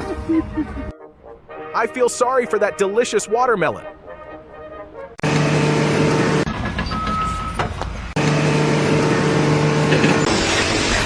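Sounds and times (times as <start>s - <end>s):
steady mechanical hum: 5.2s - 10.3s.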